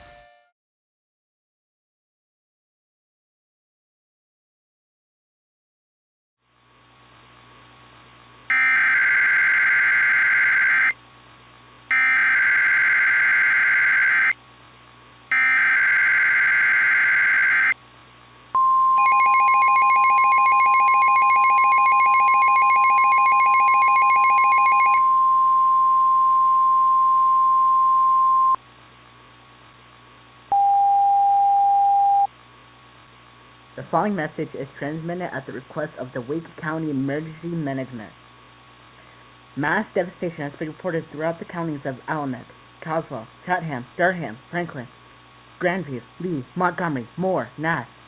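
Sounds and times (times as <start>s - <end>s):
buzzy tone: 0.0s - 0.5s
faint steady hum: 17.7s - 48.0s
steady alert tone: 19.0s - 25.1s.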